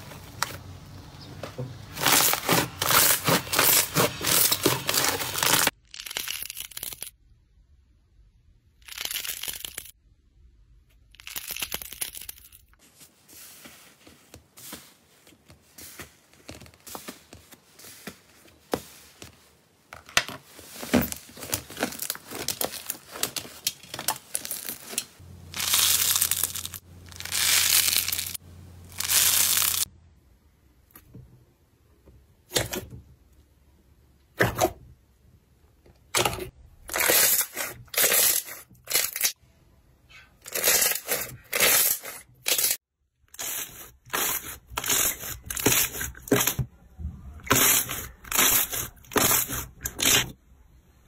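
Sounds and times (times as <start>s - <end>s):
slime squishing and crackling: 2.0s - 7.0s, 20.7s - 29.9s, 40.4s - 46.6s, 47.4s - 50.3s.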